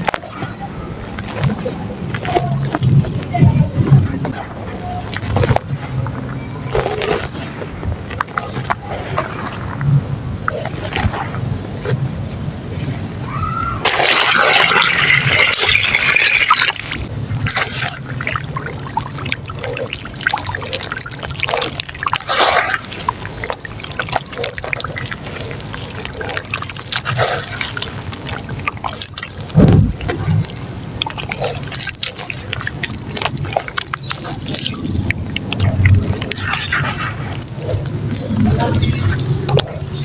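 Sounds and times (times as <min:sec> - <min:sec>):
rush of water: 0:13.3 - 0:40.0
dirt crumbling in water: 0:13.8 - 0:40.0
water dripping: 0:13.9 - 0:40.0.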